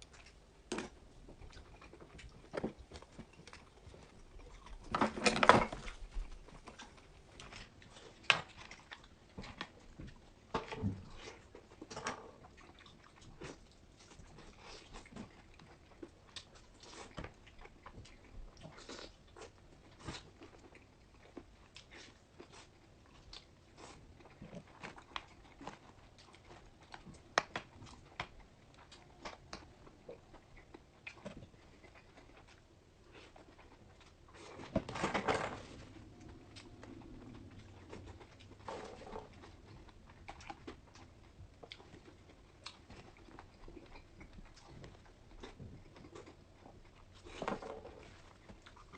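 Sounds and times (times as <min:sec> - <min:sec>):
person chewing and biting food: 0:35.8 - 0:48.9.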